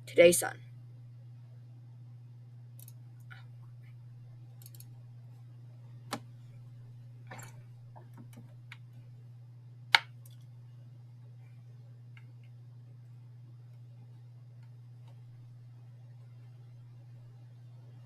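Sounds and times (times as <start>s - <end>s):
steady low hum: 0.0s - 18.0s
computer mouse clicks: 2.8s - 3.5s, 4.6s - 4.9s.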